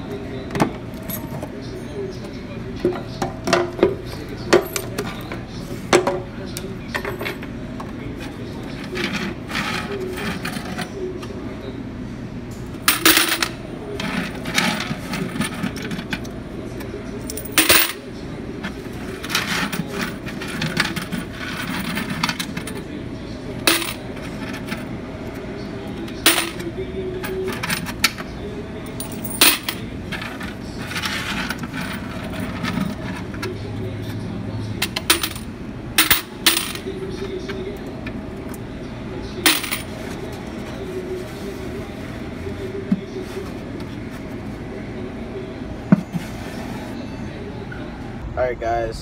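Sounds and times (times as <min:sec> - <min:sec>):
coins clinking and jingling: 0:17.4 - 0:18.0, 0:29.0 - 0:29.8, 0:39.5 - 0:39.9.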